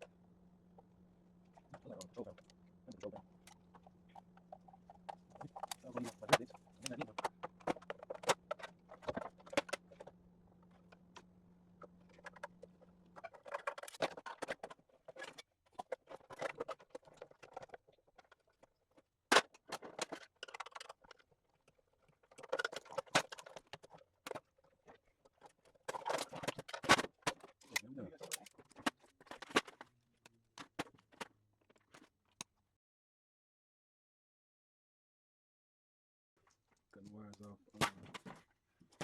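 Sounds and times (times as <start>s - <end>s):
low steady hum: 0.0s - 30.7s
metal and plastic parts clattering: 1.5s - 29.9s, 30.6s - 32.1s, 37.7s - 39.0s.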